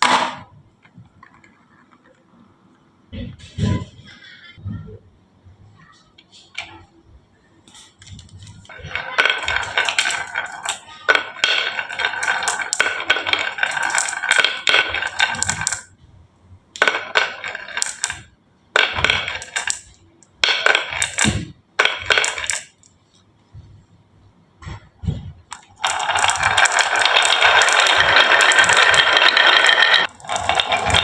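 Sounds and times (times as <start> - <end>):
marbles rolling on wooden tracks: 0.8 - 2.5, 8.0 - 16.0, 16.7 - 23.2, 25.5 - 31.0.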